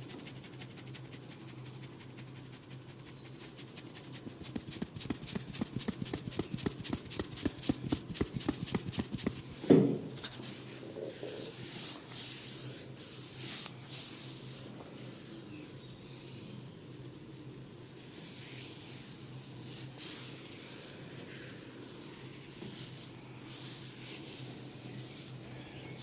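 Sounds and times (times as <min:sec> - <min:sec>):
fingers rubbing through hair: 0:00.0 - 0:09.6, 0:10.2 - 0:16.8, 0:18.0 - 0:26.0.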